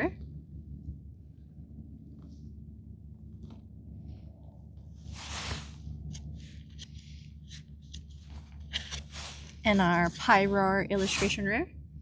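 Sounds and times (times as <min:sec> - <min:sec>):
steady low hum: 0:00.0 - 0:12.0
trading cards swishing: 0:05.1 - 0:11.5
light clicks and rustles of cards: 0:05.2 - 0:10.4.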